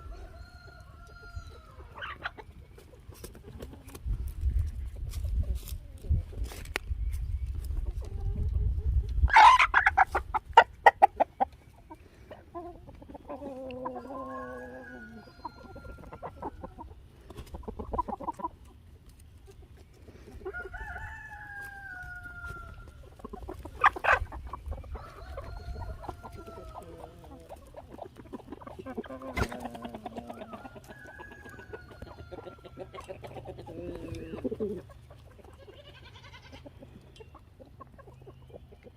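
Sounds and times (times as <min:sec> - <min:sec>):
chickens squawking: 0:00.0 - 0:06.6, 0:07.4 - 0:38.9
chickens clucking: 0:00.0 - 0:38.9
rooster crowing: 0:14.1 - 0:16.1, 0:20.6 - 0:23.0.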